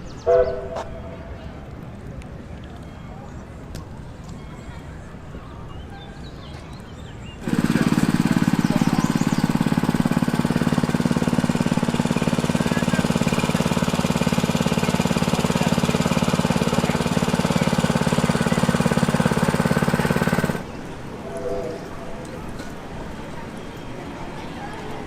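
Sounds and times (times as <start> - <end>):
small engine running: 7.4 - 23.6.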